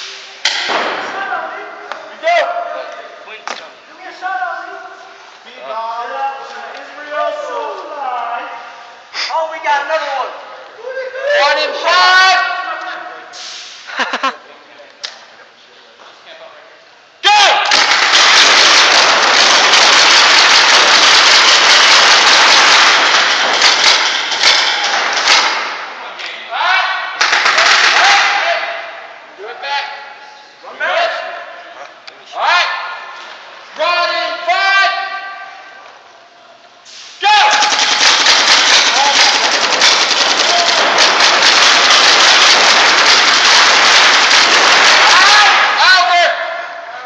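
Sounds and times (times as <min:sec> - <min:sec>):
paintball markers firing rapidly: 0:17.7 - 0:25.8, 0:37.4 - 0:45.4.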